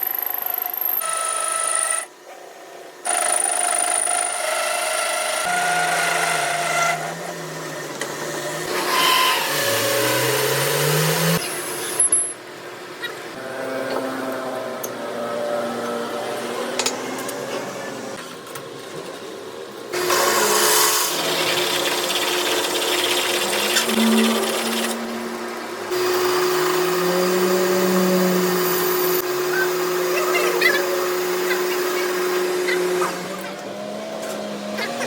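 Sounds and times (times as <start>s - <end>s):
power tool mechanical drone: 3.0s - 12.0s, 20.0s - 35.0s.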